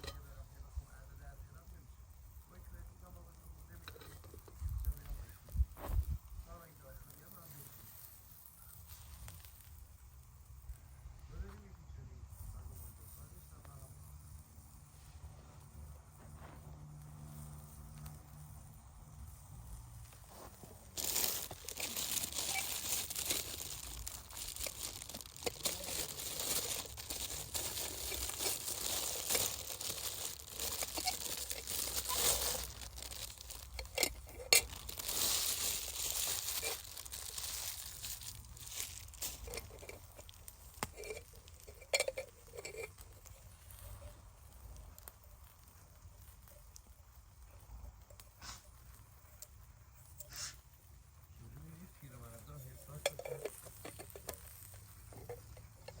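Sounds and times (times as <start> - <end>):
rustling and crinkling with clicks: 3.7 - 9.8, 20.0 - 50.6, 51.8 - 56.0.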